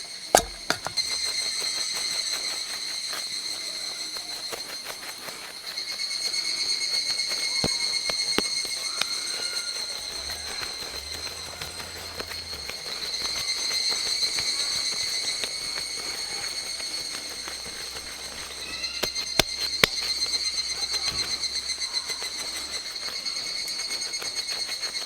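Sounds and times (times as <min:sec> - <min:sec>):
campfire crackling: 0:00.0 - 0:25.0
insect chorus: 0:00.0 - 0:25.0
sharp pops: 0:00.3 - 0:01.4, 0:07.2 - 0:24.1.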